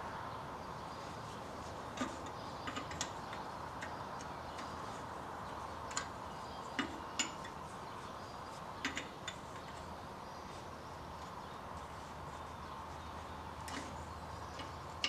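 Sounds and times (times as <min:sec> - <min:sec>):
faint steady hum: 0:00.0 - 0:15.0
wrench clinking on metal: 0:06.8 - 0:07.6.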